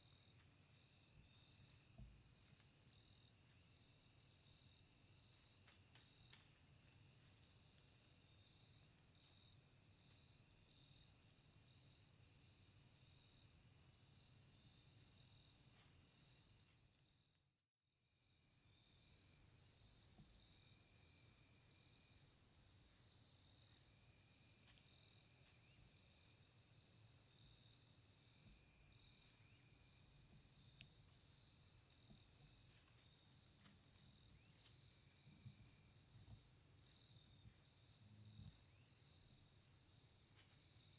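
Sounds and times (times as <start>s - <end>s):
crickets trilling: 23.5s - 40.9s.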